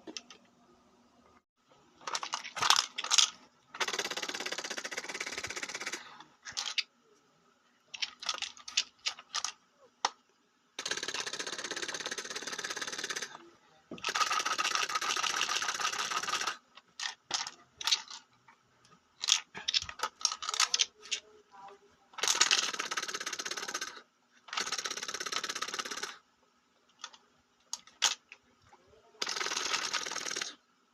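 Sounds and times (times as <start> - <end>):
toy gun plastic clicks: 2.0 - 4.2, 8.0 - 10.2, 14.0 - 18.2, 19.2 - 21.2, 22.2 - 26.2, 27.0 - 28.4.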